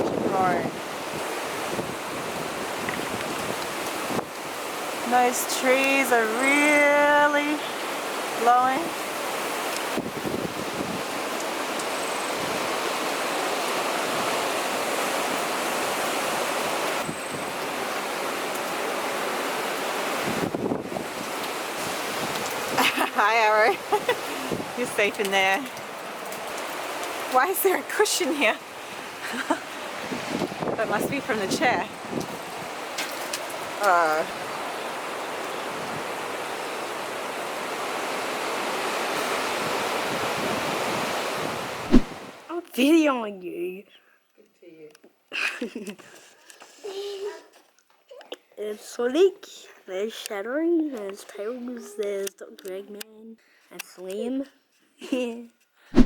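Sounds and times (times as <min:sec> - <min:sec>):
gale-force wind: 0:00.0 - 0:42.5
heavy rain: 0:00.0 - 0:42.5.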